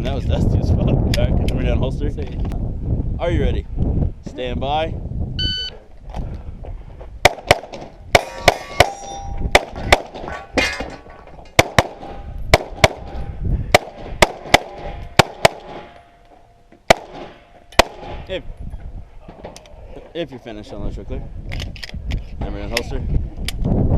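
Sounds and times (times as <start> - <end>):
pistol shots: 7.2 - 10.3, 11.6 - 16.0, 16.9 - 18.3
steel targets ringing: 8.1 - 9.6.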